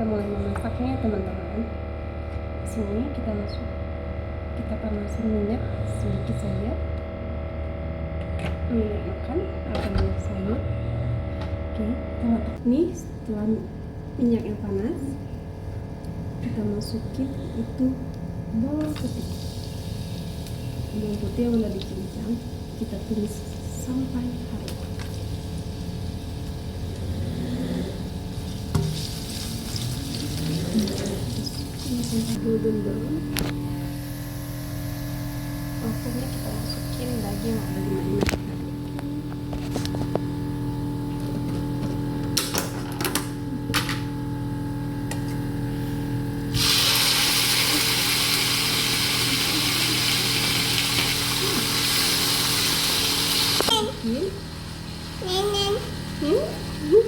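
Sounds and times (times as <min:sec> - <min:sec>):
low hum: 0:00.0 - 0:53.3
garlic sizzling in hot oil: 0:28.3 - 0:32.3, 0:46.6 - 0:53.7.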